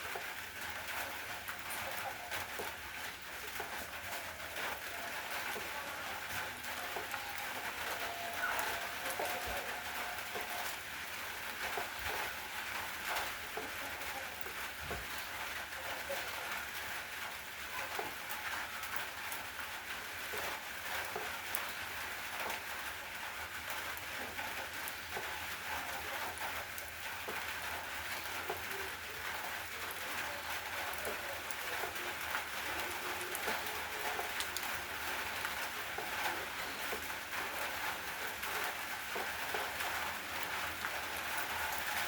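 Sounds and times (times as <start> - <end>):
raindrops ticking on a surface: 0.0 - 42.0
steady rain: 0.0 - 42.0.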